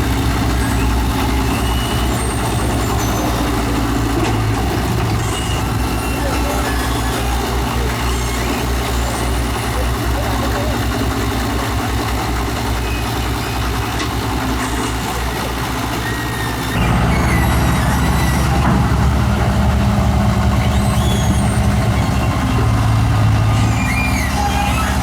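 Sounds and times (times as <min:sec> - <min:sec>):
diesel engine running: 0:00.0 - 0:25.0
faint high-pitched squeaks: 0:12.9 - 0:18.8, 0:20.4 - 0:25.0.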